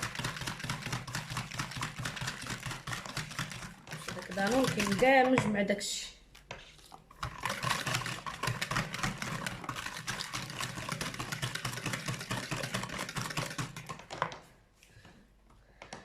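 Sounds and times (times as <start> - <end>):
beater clattering against bowl: 0.0 - 5.5.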